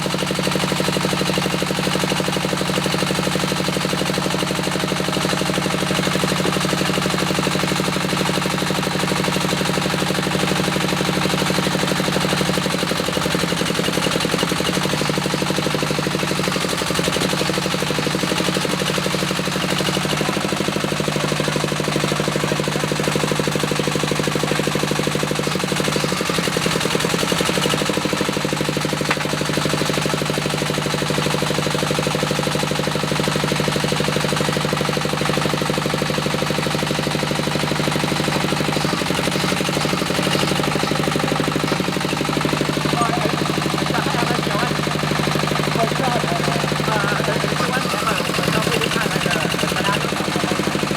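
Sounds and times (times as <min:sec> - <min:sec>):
diesel engine knocking: 0:00.0 - 0:50.9.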